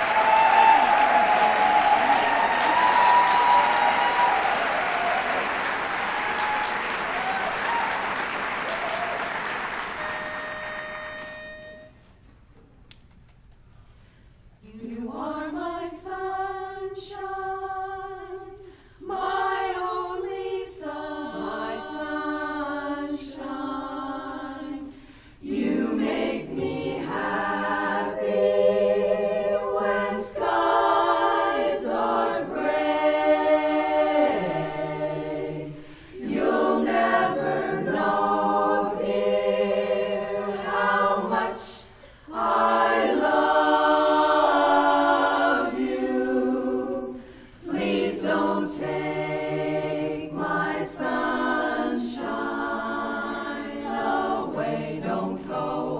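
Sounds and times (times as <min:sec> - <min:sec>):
women's chorus singing a cappella: 0:14.6 - 0:55.9.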